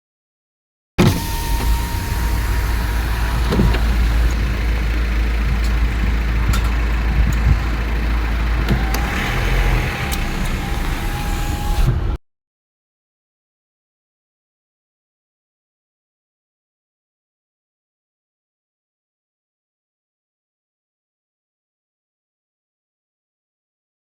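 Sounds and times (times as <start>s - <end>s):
vehicle engine rumble: 1.0s - 12.2s
faint steady whine: 1.3s - 11.7s.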